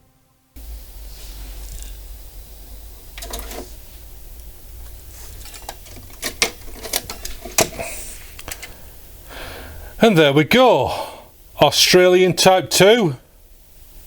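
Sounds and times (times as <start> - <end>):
low steady hum: 0.0 - 14.0
plastic cassette clicks and clacks: 3.2 - 3.6, 5.4 - 8.8.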